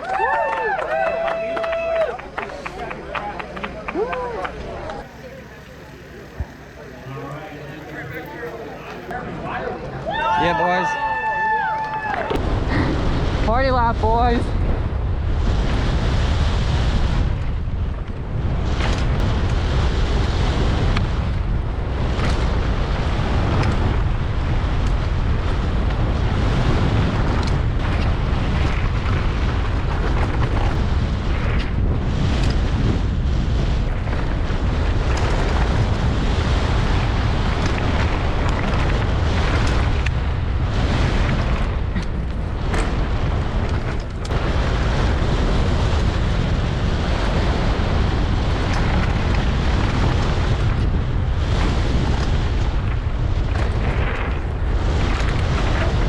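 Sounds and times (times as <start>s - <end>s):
wind buffeting microphone: 0.0s - 56.0s
bike frame rattling: 33.8s - 44.3s, 47.9s - 56.0s.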